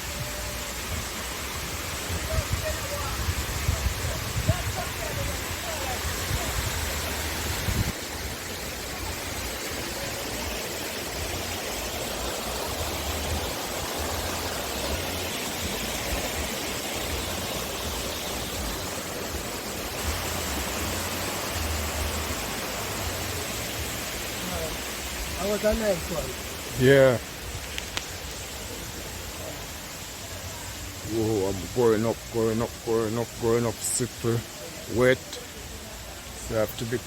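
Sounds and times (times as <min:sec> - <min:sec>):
wind buffeting microphone: 0:00.0 - 0:08.5
running water rushing: 0:00.0 - 0:37.0.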